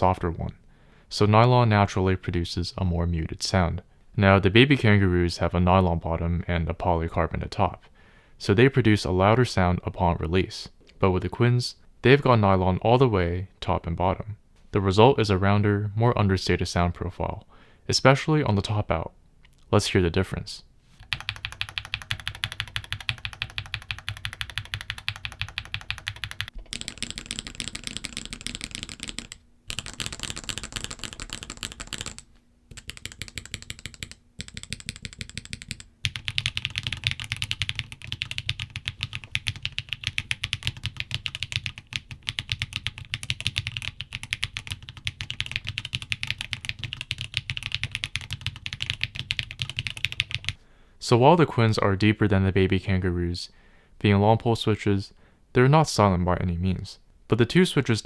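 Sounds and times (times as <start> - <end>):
rapid mechanical keyboard typing: 21.0 - 50.6.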